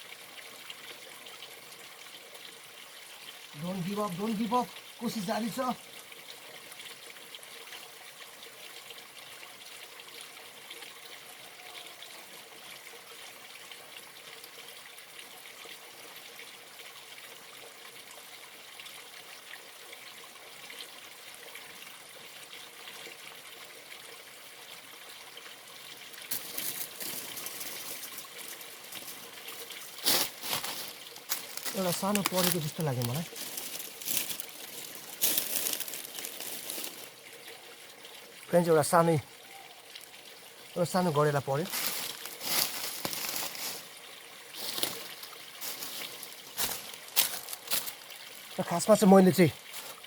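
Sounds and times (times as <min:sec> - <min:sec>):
stream water trickling: 0:00.0 - 0:50.0.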